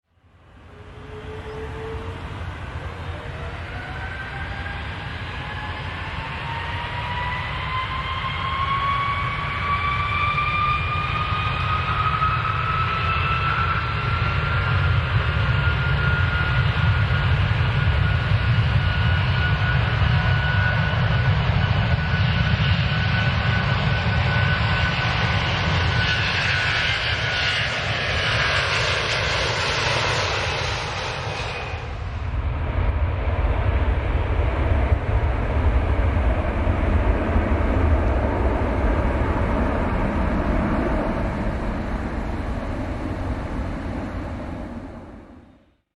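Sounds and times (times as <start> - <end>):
airplane engine whine: 0.0 - 45.9
low engine rumble: 31.8 - 45.6.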